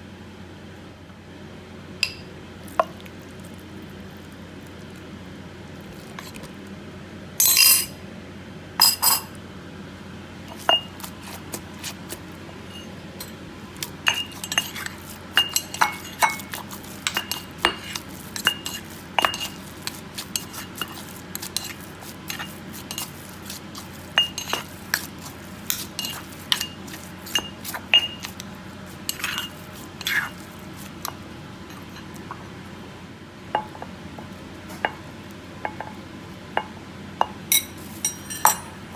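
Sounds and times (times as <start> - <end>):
utensils clinking against cookware: 2.0 - 2.3, 7.4 - 8.0, 8.8 - 9.4, 10.5 - 11.0, 12.6 - 28.4, 29.0 - 32.3, 37.2 - 38.9.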